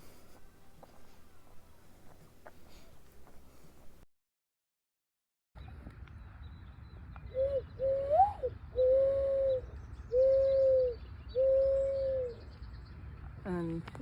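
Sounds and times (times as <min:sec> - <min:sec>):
dove cooing: 0:07.3 - 0:12.4.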